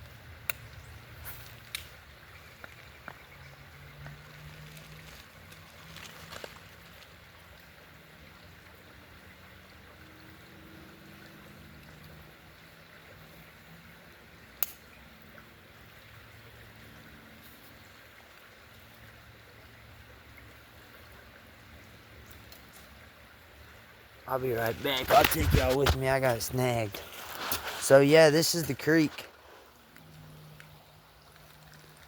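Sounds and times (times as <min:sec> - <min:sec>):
small creek flowing: 0:00.0 - 0:32.0.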